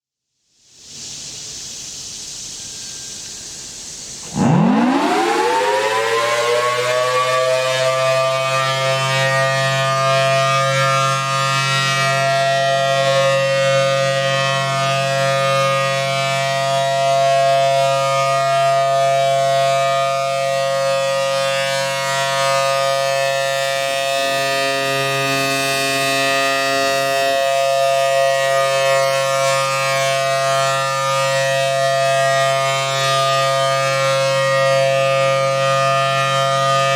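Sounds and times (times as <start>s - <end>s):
outdoor warning siren: 3.0s - 36.9s.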